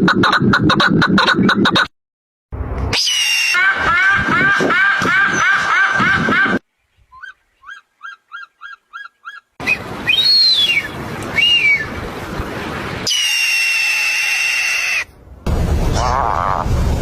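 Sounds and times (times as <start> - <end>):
animal whistled calls: 7.1 - 11.9.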